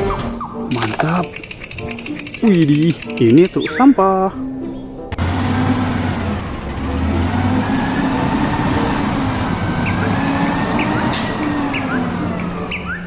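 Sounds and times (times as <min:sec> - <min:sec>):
truck engine running: 0:05.1 - 0:13.0.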